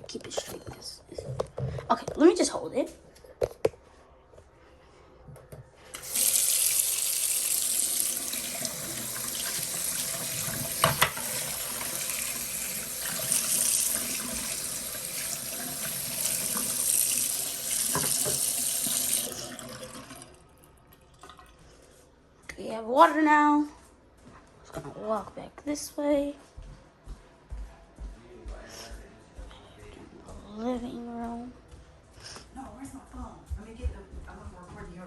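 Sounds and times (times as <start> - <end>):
tap water filling container: 5.9 - 21.6.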